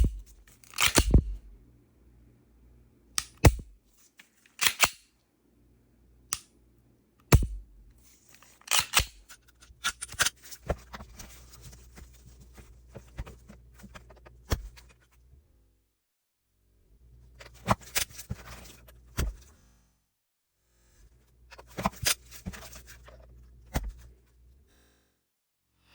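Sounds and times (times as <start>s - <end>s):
gun handling noise: 0.0s - 1.4s, 4.2s - 5.0s, 8.4s - 9.2s
pistol metallic clicks: 0.6s - 1.3s, 3.2s - 3.6s, 4.6s - 5.1s, 8.7s - 9.2s.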